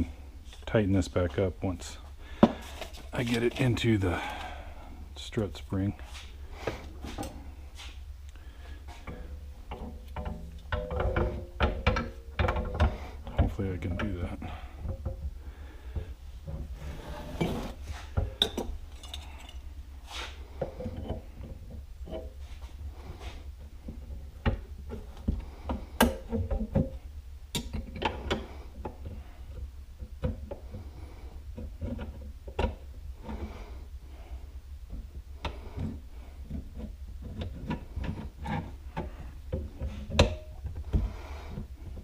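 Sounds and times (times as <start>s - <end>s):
steady low hum: 0.0s - 42.0s
metallic clinks and knocks: 9.1s - 14.2s, 18.3s - 19.7s.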